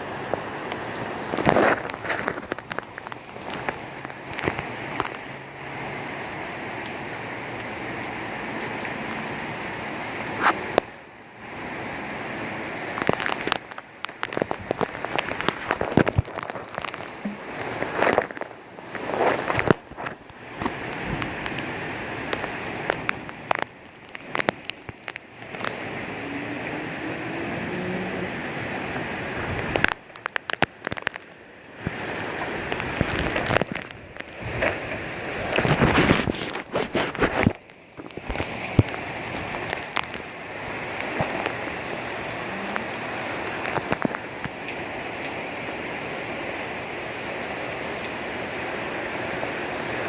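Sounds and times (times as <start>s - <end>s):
gusting wind: 0.0s - 50.0s
heavy rain: 0.0s - 50.0s
raindrops tapping surfaces: 0.0s - 50.0s
drops tapping on microphone: 13.0s - 18.5s.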